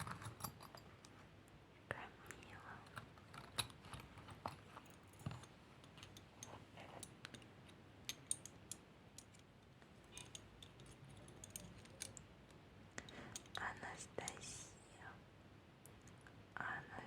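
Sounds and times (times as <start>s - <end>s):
jewellery clicking and tapping: 0.0s - 1.2s, 2.8s - 13.6s.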